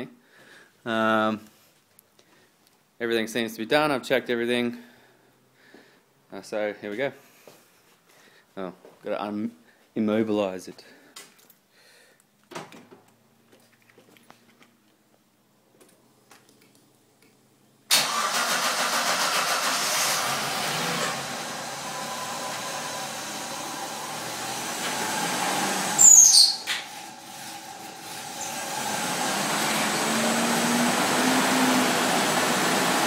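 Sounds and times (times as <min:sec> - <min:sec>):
car engine starting and idling: 0:17.9 - 0:26.0, 0:26.8 - 0:33.0
loud burst with falling whistle: 0:25.9 - 0:26.6.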